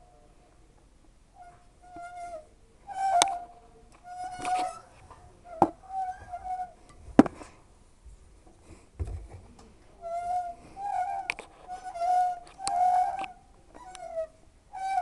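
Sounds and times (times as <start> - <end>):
washing machine drum squealing: 1.4 - 6.8, 10.0 - 15.0.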